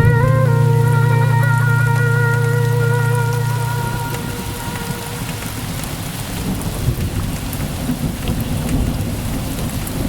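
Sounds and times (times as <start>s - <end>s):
high sustained tone: 0.0s - 5.2s
deep bass note: 0.0s - 5.4s
rain falling: 0.0s - 10.0s.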